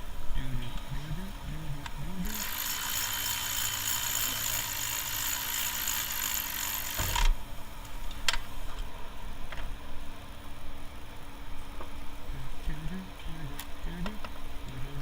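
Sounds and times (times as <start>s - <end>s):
power tool running: 2.2s - 7.4s.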